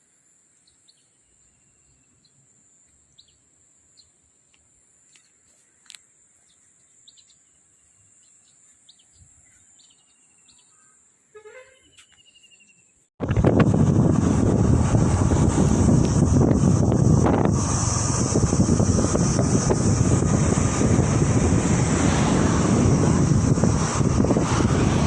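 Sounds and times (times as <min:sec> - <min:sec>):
birds chirping: 0:00.5 - 0:13.1
wind buffeting microphone: 0:13.2 - 0:25.0.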